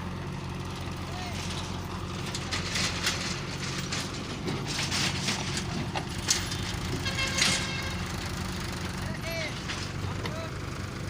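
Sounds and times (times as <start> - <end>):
heavy diesel engine running: 0.0 - 11.0
crunching and scraping: 1.1 - 8.4, 9.0 - 10.5.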